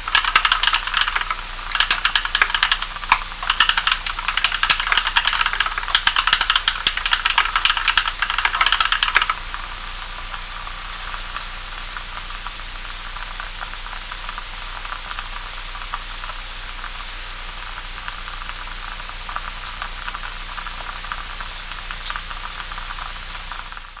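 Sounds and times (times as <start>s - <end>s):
steady hiss: 0.0s - 24.0s
mechanical keyboard key clacks: 0.1s - 9.3s.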